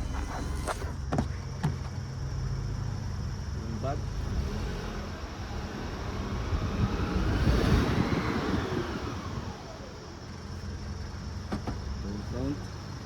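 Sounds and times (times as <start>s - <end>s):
car engine humming: 0.0s - 13.0s
vehicle passing by whooshing: 4.3s - 10.0s.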